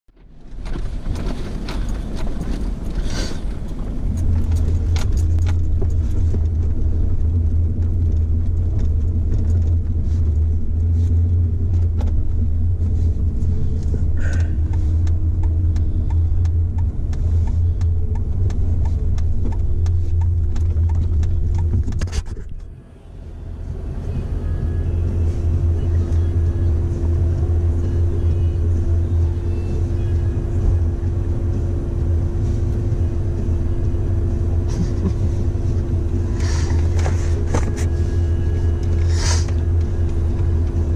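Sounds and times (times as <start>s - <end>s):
car interior drone: 0.1s - 40.9s
small rattles and clicks: 0.4s - 22.7s.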